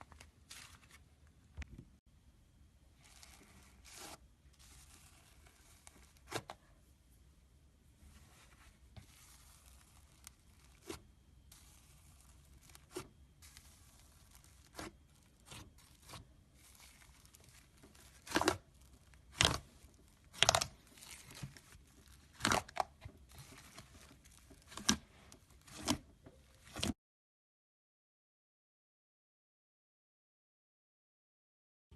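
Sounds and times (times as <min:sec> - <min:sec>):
sticky slime handling: 0:03.0 - 0:06.7, 0:08.1 - 0:27.0.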